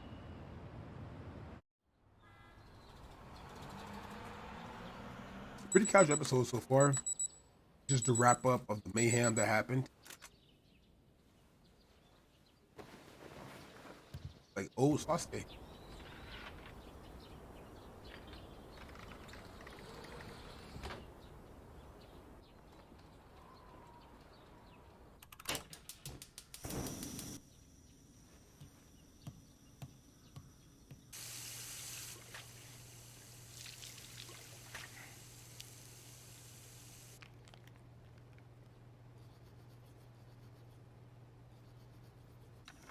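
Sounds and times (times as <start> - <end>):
water pouring: 31.2 - 37.7.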